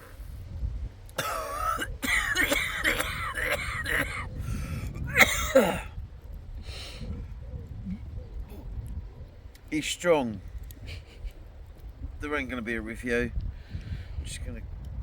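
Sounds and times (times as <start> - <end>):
man coughing: 1.2 - 4.4, 5.0 - 5.9.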